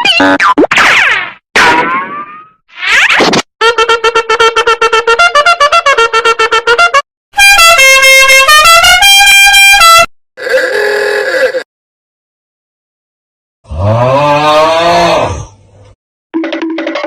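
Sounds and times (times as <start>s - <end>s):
loud horn-like melody: 3.6s - 10.1s.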